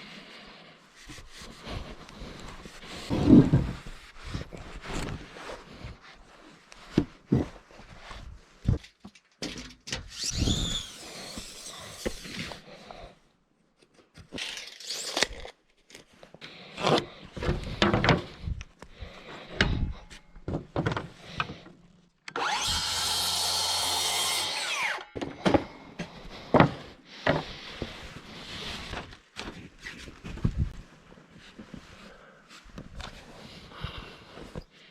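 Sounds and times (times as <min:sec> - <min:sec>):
power tool running: 0:10.2 - 0:12.3, 0:22.3 - 0:25.1.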